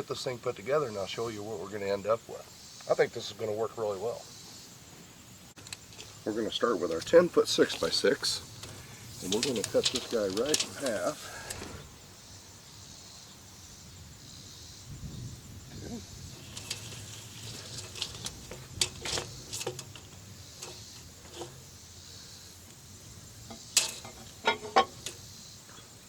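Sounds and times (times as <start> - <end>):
high insect buzz: 0.8 - 26.0.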